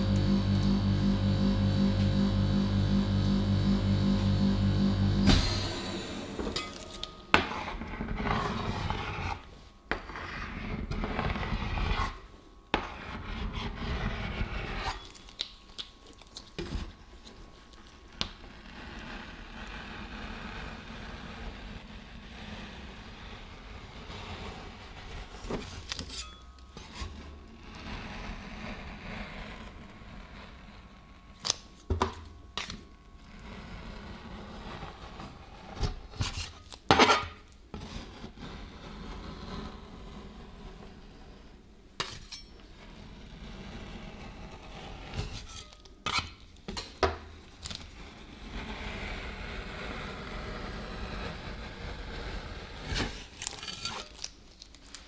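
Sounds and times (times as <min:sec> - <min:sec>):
metal spatulas scraping steel: 0:26.0 - 0:27.2, 0:42.0 - 0:42.6.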